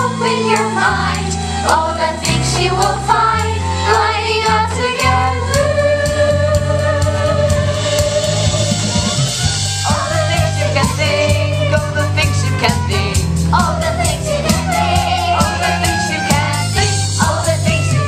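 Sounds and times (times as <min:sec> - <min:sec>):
choir singing: 0:00.0 - 0:07.4, 0:09.8 - 0:11.6, 0:13.6 - 0:18.0
band accompaniment: 0:00.0 - 0:18.0.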